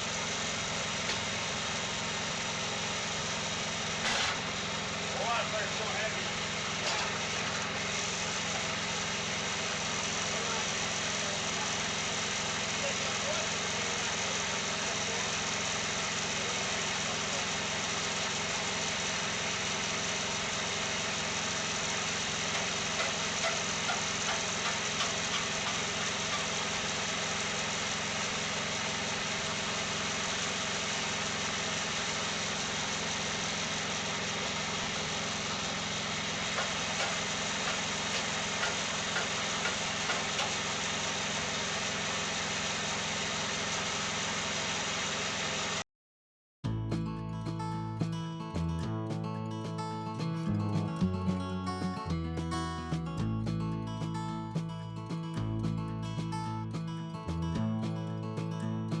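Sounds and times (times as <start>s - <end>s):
sawmill engine running: 0.0s - 45.8s.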